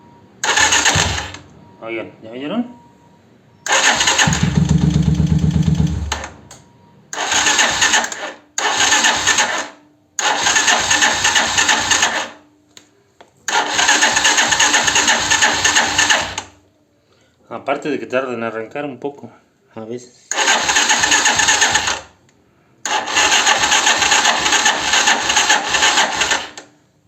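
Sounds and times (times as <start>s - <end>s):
motorcycle starter cranking: 0.4s - 1.5s, 3.6s - 6.6s, 7.2s - 12.4s, 13.5s - 16.6s, 20.3s - 22.1s, 22.9s - 26.7s
starter crack: 0.4s - 1.5s.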